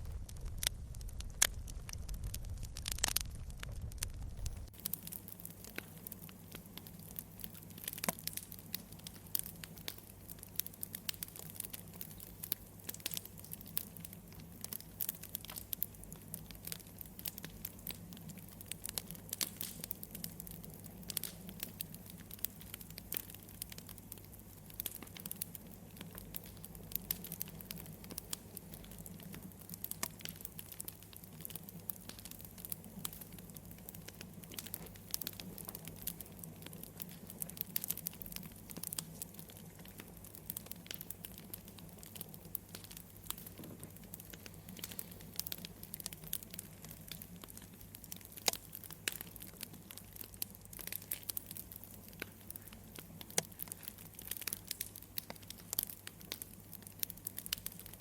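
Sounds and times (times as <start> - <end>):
steady low hum: 0.0 - 5.8
wood fire crackling: 0.0 - 58.0.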